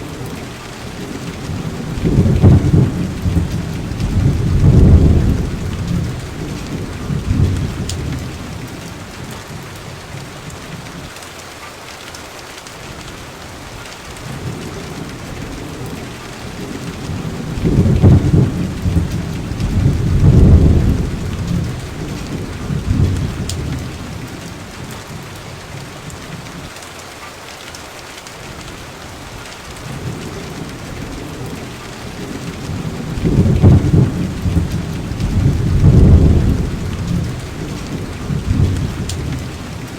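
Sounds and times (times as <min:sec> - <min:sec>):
rolling thunder: 0:00.0 - 0:09.4, 0:14.4 - 0:24.9, 0:29.9 - 0:39.9
steady rain hiss: 0:00.0 - 0:39.9.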